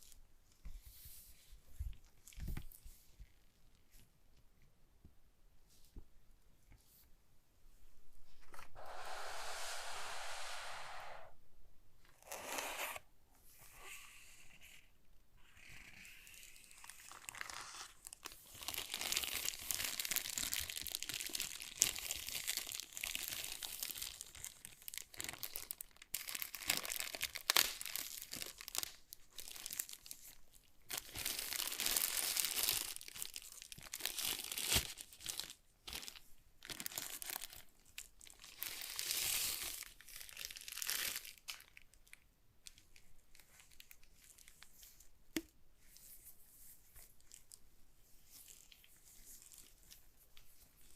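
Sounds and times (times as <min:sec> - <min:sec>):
packaging crinkling and tearing: 0:16.5 - 0:30.3, 0:30.9 - 0:44.7.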